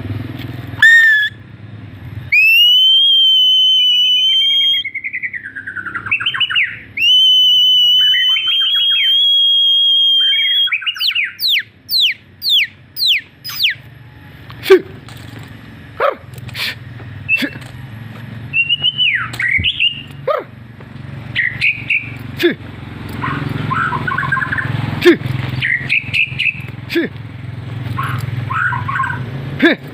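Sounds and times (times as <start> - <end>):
songbird whistling and trilling: 0.8 - 1.4, 2.3 - 13.9, 18.5 - 20.2, 21.3 - 22.3, 23.5 - 24.8, 25.5 - 26.7
sharp bird calls: 0.8 - 1.5, 2.3 - 14.0, 16.0 - 20.6, 21.2 - 27.0, 27.9 - 29.3.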